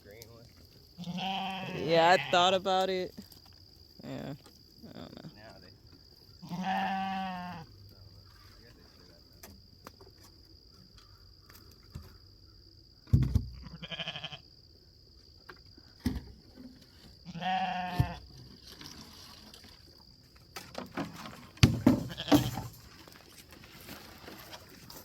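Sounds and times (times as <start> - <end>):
sheep bleating: 1.0 - 2.6, 6.4 - 7.7, 13.6 - 14.4, 17.3 - 18.2
sharp knocks and thumps: 13.0 - 13.6, 20.6 - 23.0.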